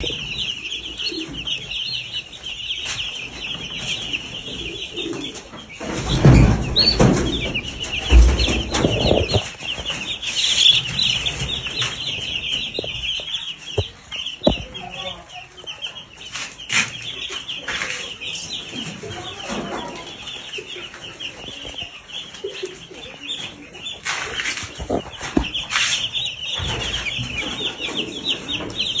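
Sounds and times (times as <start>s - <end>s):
chicks cheeping: 0.0s - 29.0s
rustling and knocks: 2.8s - 14.8s, 23.4s - 29.0s
thumps: 5.8s - 12.0s.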